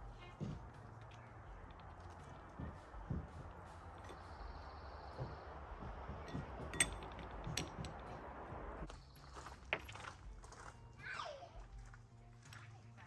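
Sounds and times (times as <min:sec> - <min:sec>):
metal tools clinking: 0:03.7 - 0:05.3, 0:06.2 - 0:08.4.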